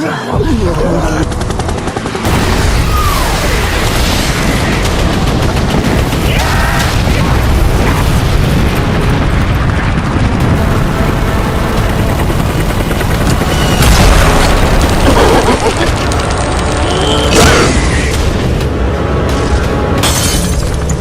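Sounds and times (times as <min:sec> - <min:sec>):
rapid gunfire: 0:01.2 - 0:16.8
deep explosion rumble: 0:02.3 - 0:11.2.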